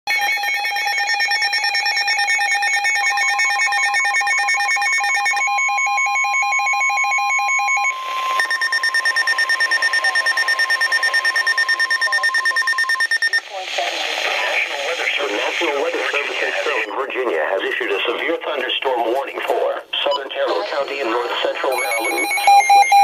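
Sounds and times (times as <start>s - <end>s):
rapid pulsing alarm beeps: 0.1s - 13.5s, 21.6s - 23.0s
burst of static: 13.4s - 18.8s, 20.0s - 21.7s
electronic beeping with warbling tones: 21.4s - 23.0s
steady single-pitch alert tone: 21.7s - 23.0s.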